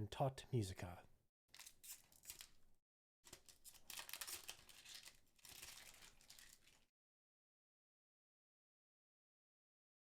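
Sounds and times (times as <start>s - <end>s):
wrapper tearing and crinkling: 1.5s - 2.6s, 3.3s - 6.9s.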